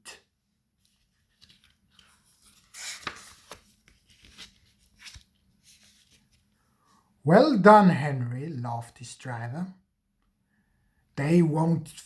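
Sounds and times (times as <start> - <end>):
paper rustling: 0.8 - 6.5.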